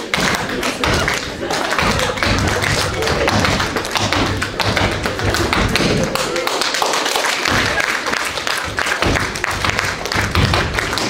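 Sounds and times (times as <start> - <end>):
tap shoes tapping on floor: 1.8 - 6.2, 9.0 - 11.0.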